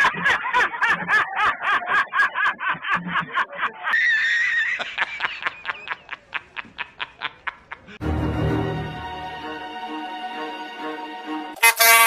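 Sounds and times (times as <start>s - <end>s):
person laughing hard: 0.0s - 8.0s.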